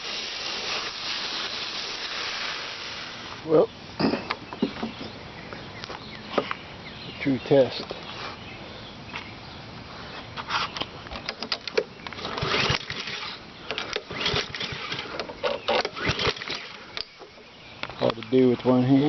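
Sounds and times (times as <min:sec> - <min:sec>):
lawn mower engine cranking: 0:00.0 - 0:05.2, 0:10.5 - 0:18.7
recoil starter cord pulls: 0:11.2 - 0:17.1.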